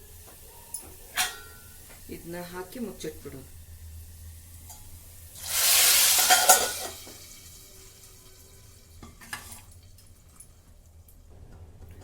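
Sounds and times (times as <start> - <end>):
hot oil sizzling loudly: 2.8 - 9.7.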